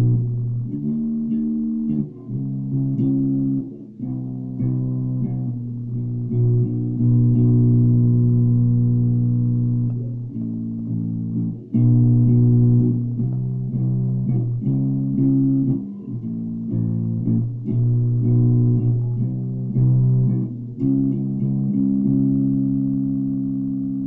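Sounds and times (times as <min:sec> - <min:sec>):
electric bass riff: 0:00.0 - 0:24.0.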